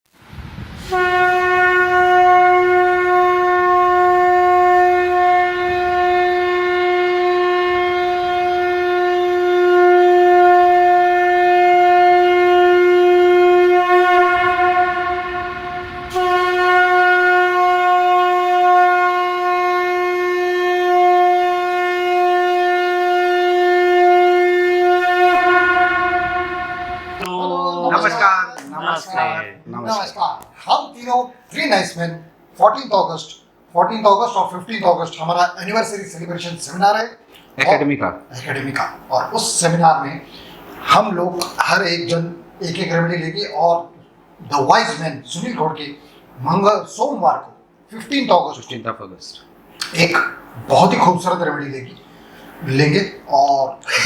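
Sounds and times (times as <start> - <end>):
conch shell blasts: 0.8 - 27.3.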